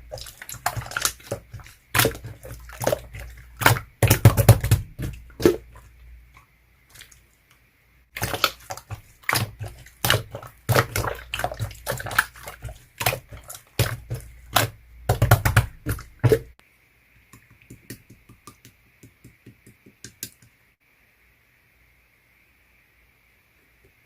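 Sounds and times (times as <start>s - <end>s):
slime squelching by hand: 0.0s - 7.3s, 8.1s - 16.6s.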